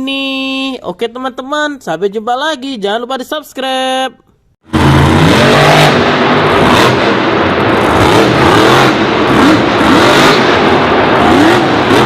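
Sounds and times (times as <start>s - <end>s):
car engines revving and racing: 4.7s - 12.0s
short rising and falling whines: 4.7s - 12.0s.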